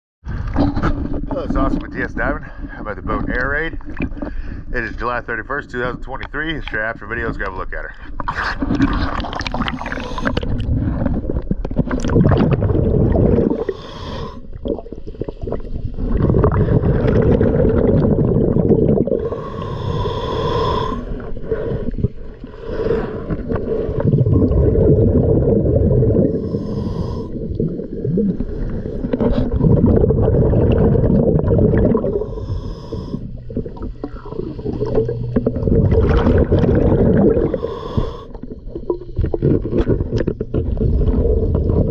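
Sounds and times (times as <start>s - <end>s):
exhaled bubbles gurgling: 0.3s - 41.9s
regulator hissing inhalation: 9.7s - 10.4s, 13.5s - 14.5s, 19.1s - 21.9s, 26.2s - 27.5s, 32.1s - 35.3s, 37.4s - 38.4s.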